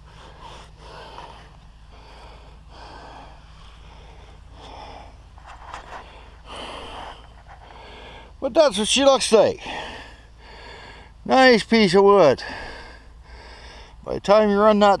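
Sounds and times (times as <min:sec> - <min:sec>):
man breathing: 0:00.0 - 0:08.5, 0:09.6 - 0:11.3, 0:12.4 - 0:14.1
steady low hum: 0:00.0 - 0:15.0.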